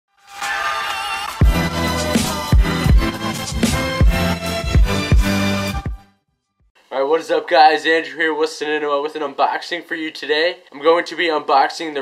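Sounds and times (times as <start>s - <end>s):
heavy bass drum beat: 1.4s - 6.0s
synth chords: 1.4s - 6.1s.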